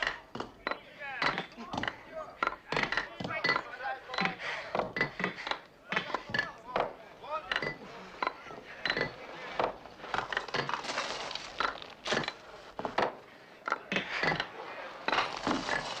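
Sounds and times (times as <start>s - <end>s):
faint voices: 13.2s - 16.0s.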